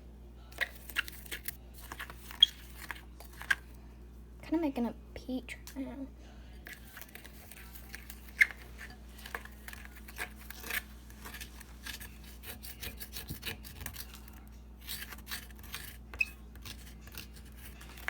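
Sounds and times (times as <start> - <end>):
powder scraped around bowl: 6.6 - 18.0.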